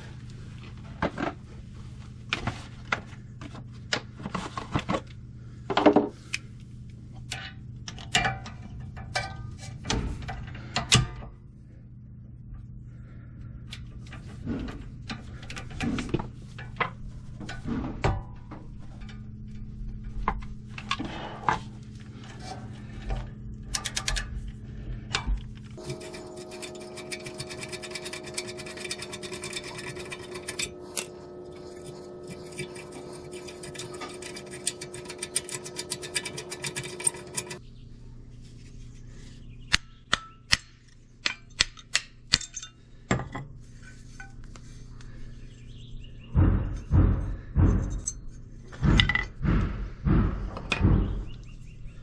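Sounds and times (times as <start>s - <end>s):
steady low hum: 0.0s - 52.0s
hand tools clinking against metal: 25.8s - 37.6s, 41.2s - 42.8s
held tones: 25.8s - 37.6s.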